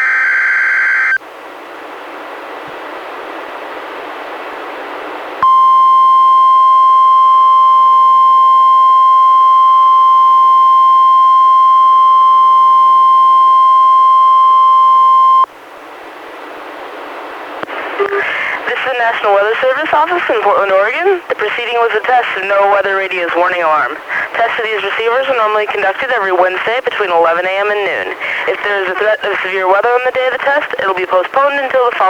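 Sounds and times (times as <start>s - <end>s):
loud steady alarm beep: 5.4s - 15.5s
radio hiss: 17.6s - 32.0s.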